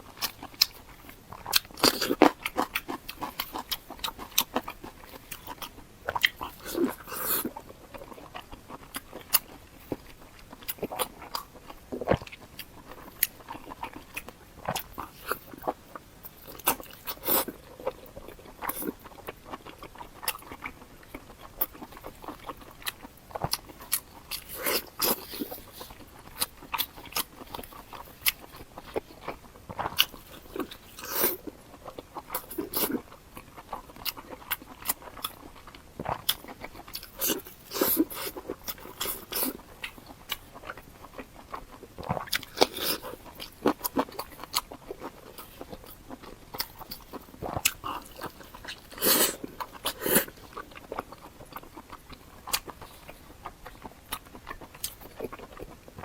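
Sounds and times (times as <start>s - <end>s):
chewing with crunches: 0.0s - 56.0s.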